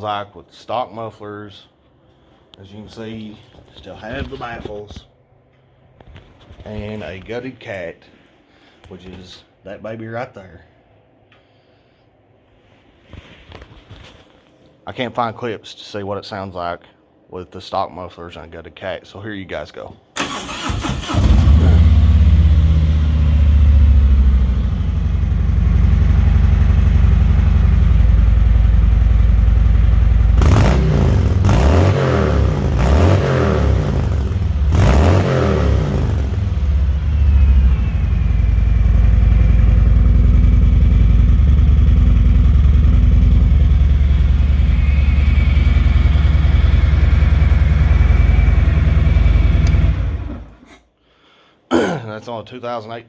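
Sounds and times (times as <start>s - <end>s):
motorcycle engine idling: 21.8s - 31.6s, 35.8s - 50.5s.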